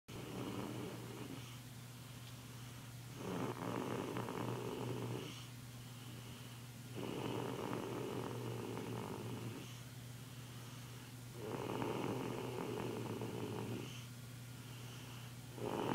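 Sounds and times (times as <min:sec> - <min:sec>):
child snoring: 0:00.1 - 0:01.6, 0:03.2 - 0:05.5, 0:06.9 - 0:09.8, 0:11.4 - 0:14.1, 0:15.5 - 0:15.9
quiet breathing: 0:00.1 - 0:15.9.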